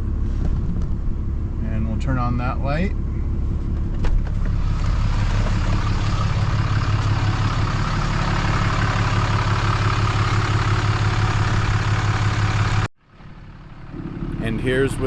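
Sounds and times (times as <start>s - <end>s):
pickup engine idling: 0.0s - 15.0s.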